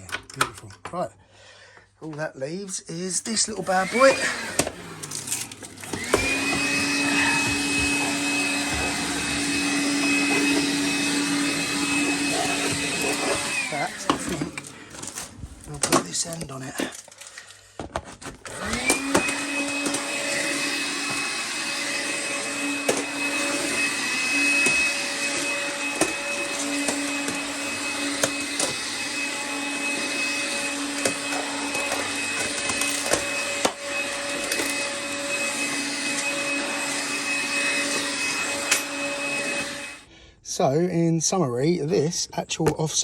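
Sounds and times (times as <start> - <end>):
vacuum cleaner whining: 3.1 - 16.9, 17.9 - 40.1.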